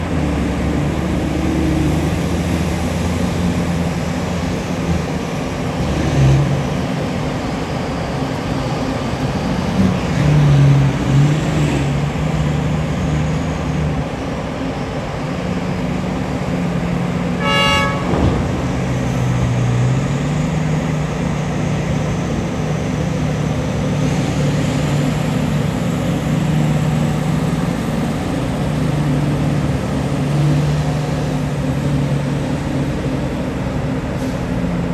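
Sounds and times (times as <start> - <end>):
heavy diesel engines under load: 0.0 - 34.9
horn blast: 17.4 - 20.3.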